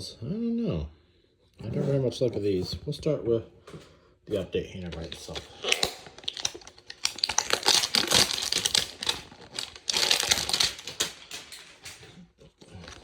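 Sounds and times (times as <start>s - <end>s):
packaging tearing and crinkling: 4.9s - 13.0s.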